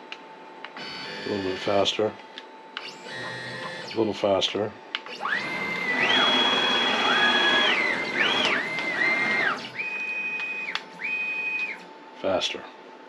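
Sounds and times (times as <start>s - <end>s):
stepper motors whining: 0.8s - 2.0s, 2.8s - 4.0s, 5.1s - 11.9s.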